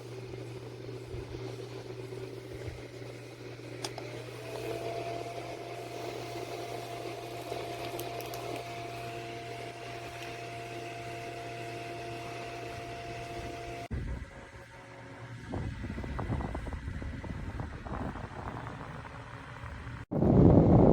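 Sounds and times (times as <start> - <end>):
desk fan motor whine: 0.0 - 20.9
wind rumble on microphone: 13.9 - 14.6, 15.3 - 20.9.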